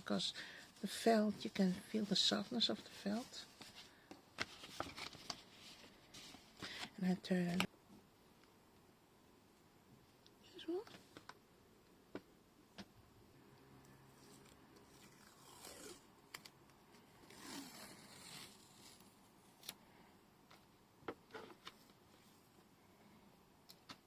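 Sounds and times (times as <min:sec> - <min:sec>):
paper rustling and scraping: 0:01.7 - 0:06.9.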